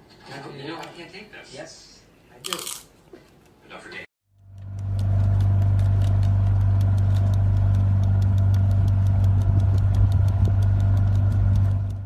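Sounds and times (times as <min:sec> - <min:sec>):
fast regular ticking: 0:04.3 - 0:12.0
loud low motor hum: 0:04.3 - 0:12.0.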